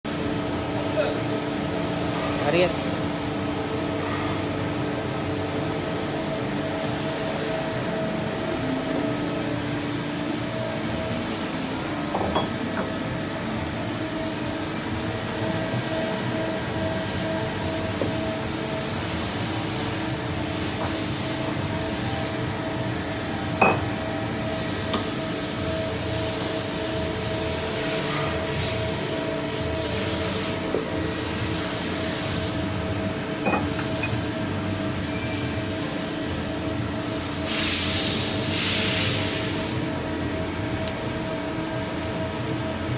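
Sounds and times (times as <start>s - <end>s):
machine humming: 0.1s - 38.4s.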